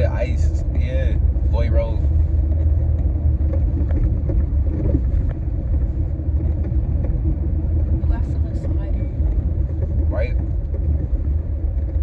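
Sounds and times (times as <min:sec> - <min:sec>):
car driving on icy road: 0:00.0 - 0:12.0.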